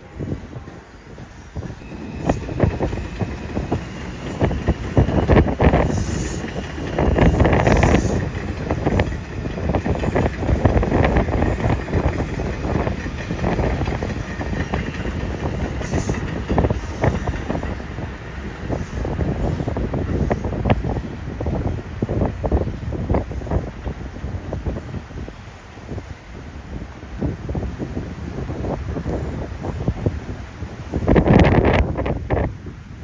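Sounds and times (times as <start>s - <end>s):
subway train rumbling: 0.0s - 33.0s
faint high whine: 1.7s - 16.2s.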